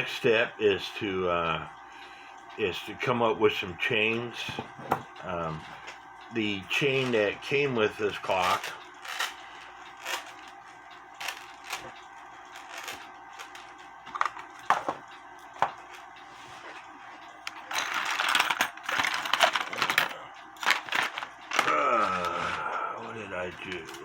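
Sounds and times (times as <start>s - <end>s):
rustling and rattling: 17.6s - 21.7s.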